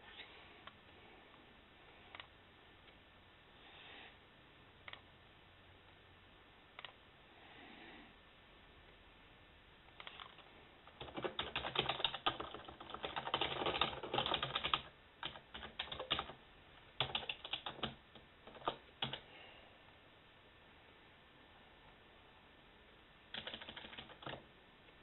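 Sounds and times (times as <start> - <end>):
computer keyboard typing: 10.9 - 16.4, 17.0 - 19.2, 23.3 - 24.4.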